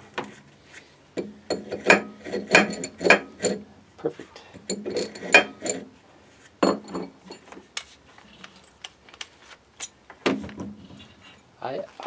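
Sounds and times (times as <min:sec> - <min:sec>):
hard objects clinking and knocking: 0:01.2 - 0:03.7, 0:04.6 - 0:05.9, 0:06.6 - 0:09.0.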